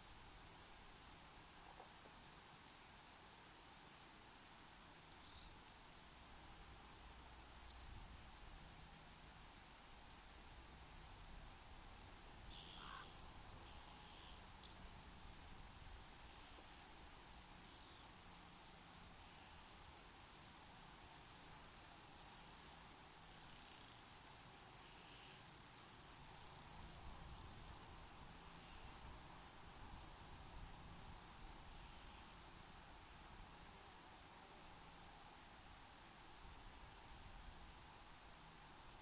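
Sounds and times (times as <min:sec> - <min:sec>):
open air hiss: 0:00.0 - 0:39.0
cricket chirping: 0:12.5 - 0:35.0.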